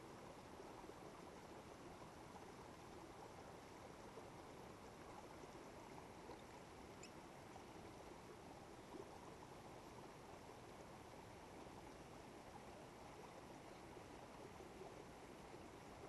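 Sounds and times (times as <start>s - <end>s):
faint outdoor hiss: 0.0s - 16.0s
faint high chirp: 7.0s - 7.2s.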